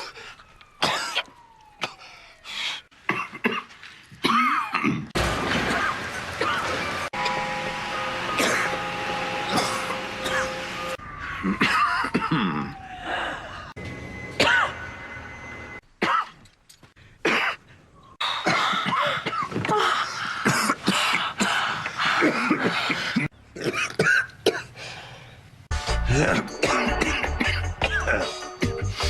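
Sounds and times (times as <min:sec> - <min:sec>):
man coughing: 0:00.8 - 0:02.0, 0:03.1 - 0:05.1, 0:08.4 - 0:08.8, 0:09.5 - 0:10.6, 0:11.4 - 0:12.8, 0:14.4 - 0:14.8, 0:17.2 - 0:17.6, 0:18.4 - 0:21.6, 0:26.1 - 0:28.5.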